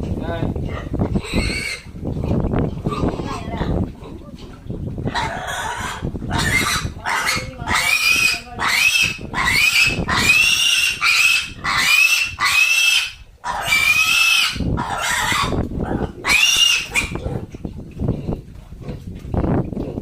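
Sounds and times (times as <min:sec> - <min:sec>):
pig squealing: 0:01.2 - 0:01.9, 0:05.1 - 0:17.5.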